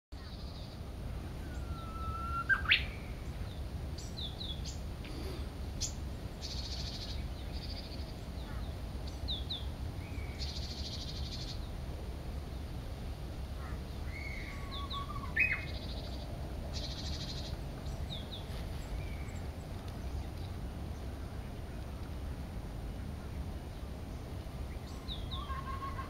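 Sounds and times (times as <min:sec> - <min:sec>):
upward whistled bird call: 0:01.4 - 0:03.0, 0:25.0 - 0:26.0.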